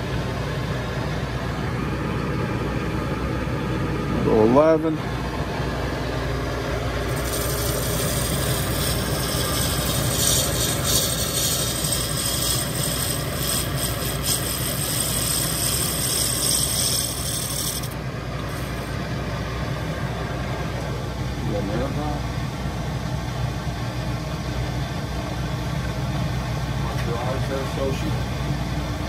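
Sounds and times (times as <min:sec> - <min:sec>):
metal lathe running: 0:05.2 - 0:20.9
boring tool scraping hiss: 0:07.1 - 0:18.9.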